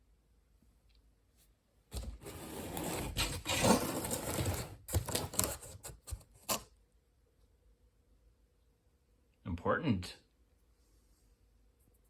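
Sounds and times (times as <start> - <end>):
cardboard rustling and scraping: 1.9 - 6.7.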